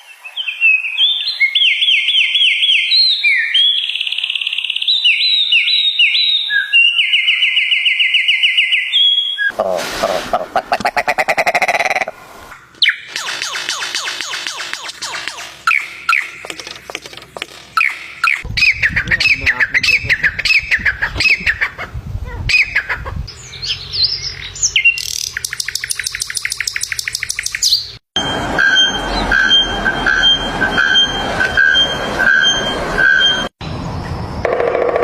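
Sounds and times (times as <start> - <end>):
whistled bird notes: 0.0 - 9.5
fast bird trill: 12.8 - 16.7, 22.5 - 28.0.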